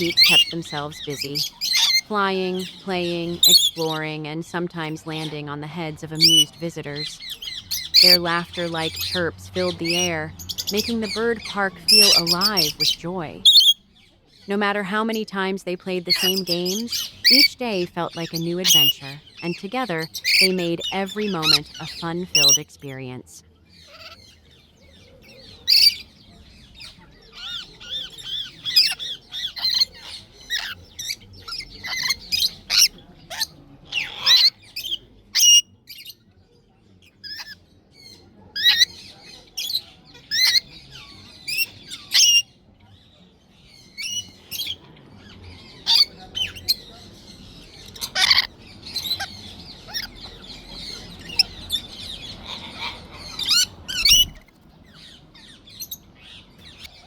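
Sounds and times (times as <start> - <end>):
lorikeets squawking and chattering: 0.0 - 57.0.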